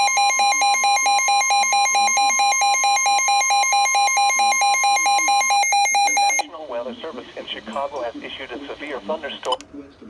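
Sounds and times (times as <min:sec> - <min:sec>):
electronic alarm beeping rapidly: 0:00.0 - 0:06.4.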